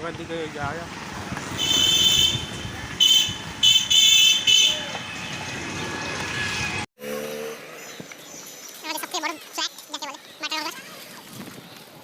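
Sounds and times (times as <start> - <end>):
road traffic noise: 0.0 - 11.1
vehicle horn honking: 1.5 - 5.4.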